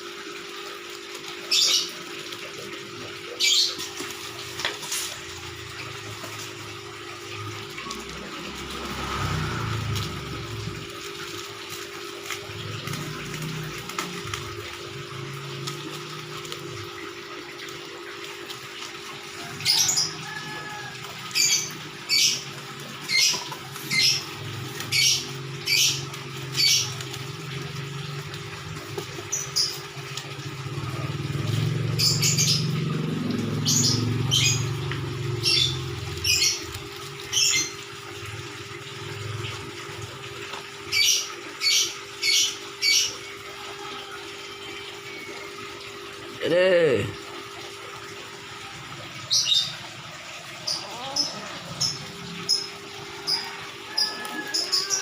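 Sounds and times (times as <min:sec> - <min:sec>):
high-pitched animal calls: 0:19.3 - 0:27.6, 0:29.1 - 0:37.9, 0:49.2 - 0:55.0.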